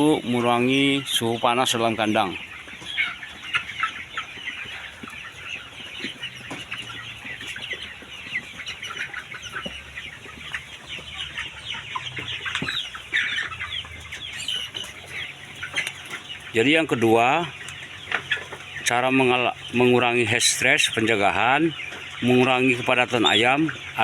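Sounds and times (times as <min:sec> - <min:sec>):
chickens clucking and cheeping: 0:00.0 - 0:24.0.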